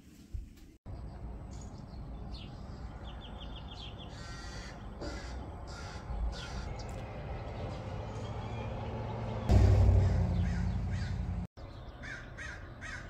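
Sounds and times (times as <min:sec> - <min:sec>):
birds chirping: 0:00.9 - 0:13.0
harsh sweeping bird calls: 0:01.0 - 0:13.0
low background rumble: 0:09.5 - 0:11.5.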